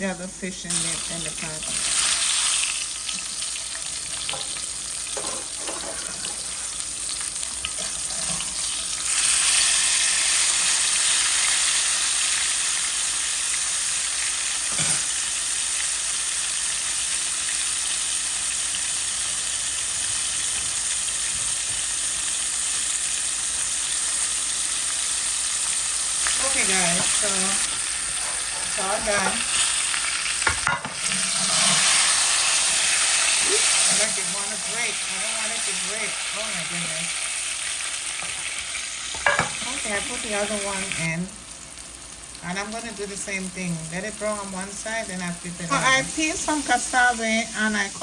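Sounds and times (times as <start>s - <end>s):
fish sizzling in hot oil: 0.6s - 48.0s.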